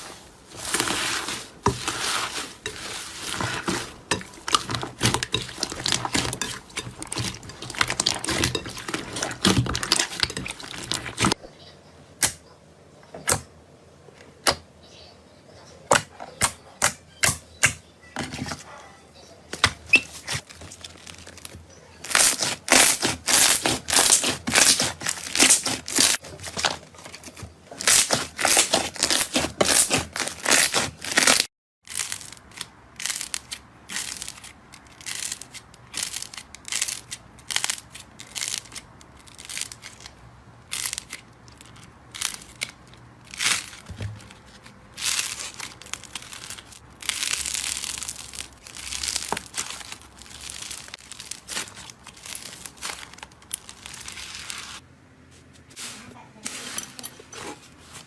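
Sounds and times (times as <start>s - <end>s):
slime clicks and crackles: 27.8s - 43.9s, 45.0s - 54.7s.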